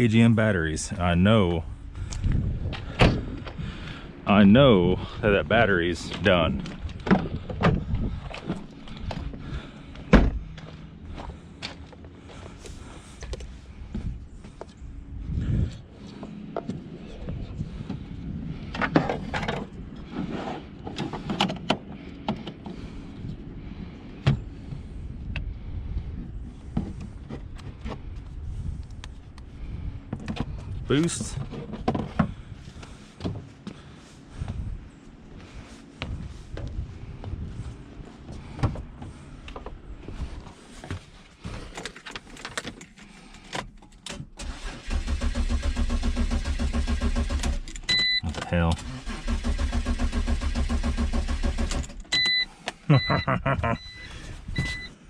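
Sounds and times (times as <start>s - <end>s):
low background rumble: 0.0s - 55.0s
starter cranking car engine: 43.4s - 52.4s.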